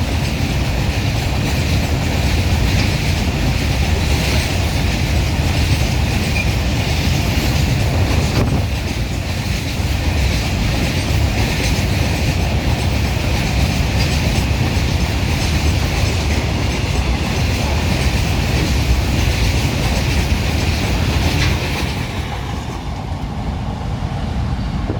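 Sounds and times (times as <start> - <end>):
wheels clattering on rails: 0.0 - 23.9
freight train rumbling past: 0.0 - 24.9.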